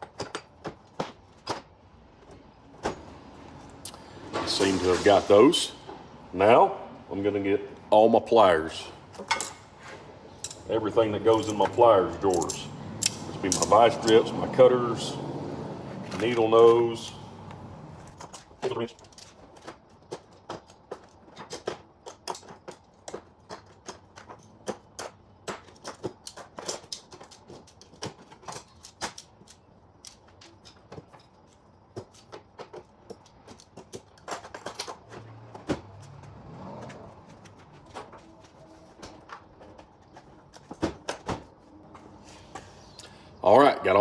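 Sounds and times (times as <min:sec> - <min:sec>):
metal hand tools clattering: 0:09.2 - 0:09.7, 0:10.4 - 0:14.3.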